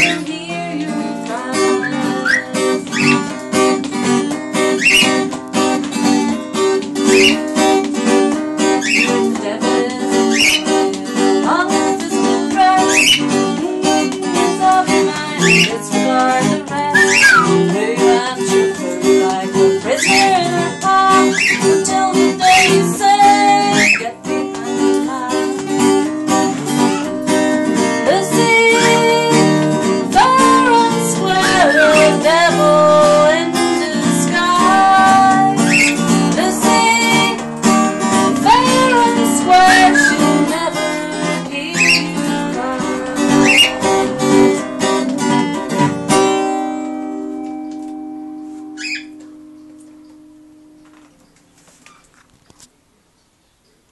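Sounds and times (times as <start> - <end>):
cockatiel whistling: 0.0 - 0.2, 1.8 - 3.3, 4.7 - 5.3, 7.1 - 7.5, 8.7 - 9.3, 10.2 - 10.8, 12.8 - 13.3, 15.4 - 15.8, 16.9 - 17.6, 19.5 - 20.4, 21.2 - 21.8, 22.5 - 22.9, 23.7 - 24.1, 31.4 - 33.0, 35.6 - 36.1, 39.6 - 40.3, 41.7 - 42.2, 43.4 - 43.8, 48.8 - 49.2
acoustic guitar strumming: 0.0 - 52.1.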